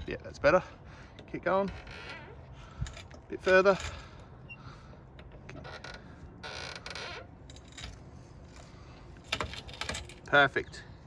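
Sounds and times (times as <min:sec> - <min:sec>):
floor jack creaking and clicking: 0:08.6 - 0:10.3.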